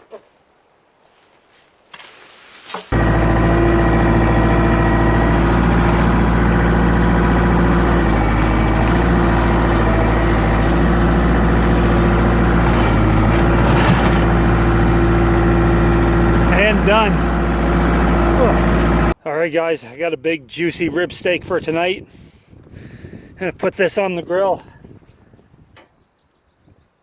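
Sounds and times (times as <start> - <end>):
diesel engine running: 2.9 - 19.2.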